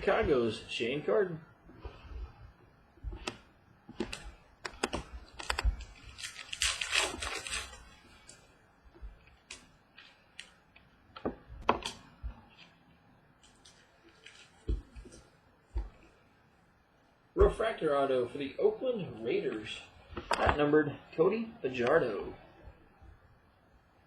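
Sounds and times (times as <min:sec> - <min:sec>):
cards clicking and tapping: 0:03.1 - 0:05.9
wrapper rustling: 0:04.0 - 0:08.5, 0:13.4 - 0:15.3.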